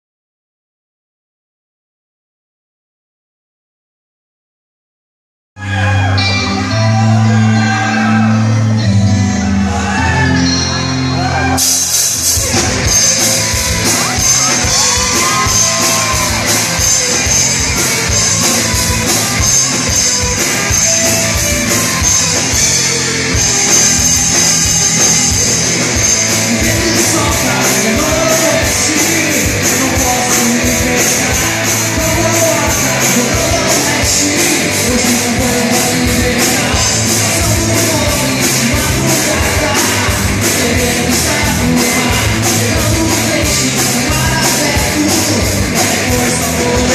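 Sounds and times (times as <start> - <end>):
hard rock band playing: 5.6 - 46.9
fast drum beat with cymbals: 11.6 - 46.9.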